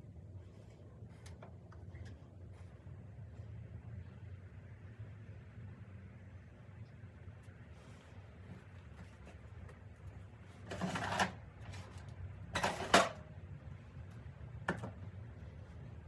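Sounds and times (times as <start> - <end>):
clattering handling noise: 10.6 - 13.3.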